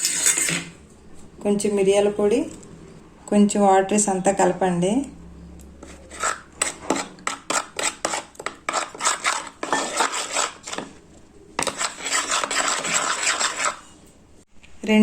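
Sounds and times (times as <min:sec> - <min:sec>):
spoon scraping bowl: 0:00.0 - 0:00.8, 0:05.8 - 0:11.0, 0:11.6 - 0:14.1.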